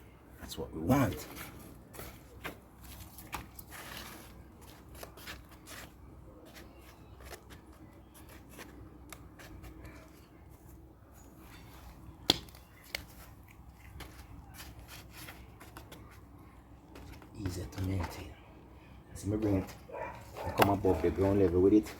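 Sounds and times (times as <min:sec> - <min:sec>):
rustling and scraping: 0:01.0 - 0:18.3.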